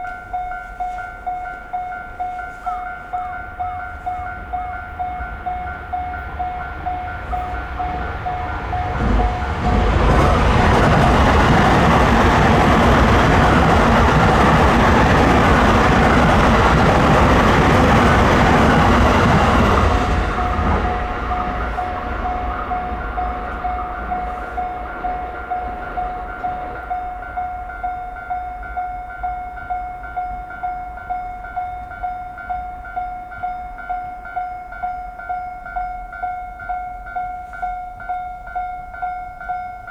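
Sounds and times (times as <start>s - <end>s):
level crossing warning bell: 0.0s - 39.9s
train roaring past: 2.2s - 33.5s.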